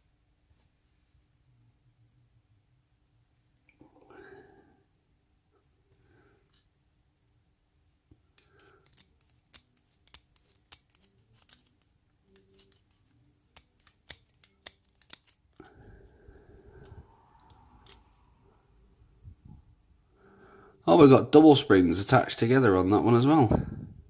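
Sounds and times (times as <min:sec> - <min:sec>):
metallic clicks of lock tools: 0:08.4 - 0:15.7.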